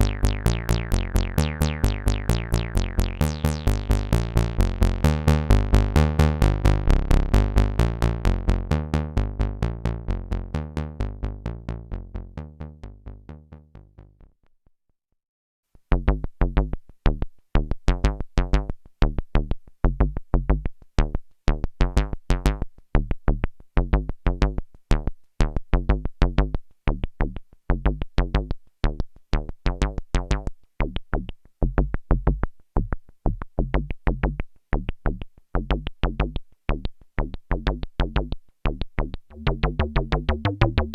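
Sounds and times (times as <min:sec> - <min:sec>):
synthesizer bass sequence: 0:00.0 - 0:14.0, 0:39.3 - 0:40.9.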